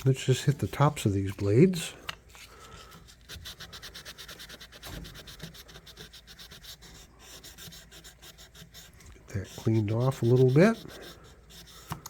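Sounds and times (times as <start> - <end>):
abrasive scratching on steel blade: 3.4 - 11.9.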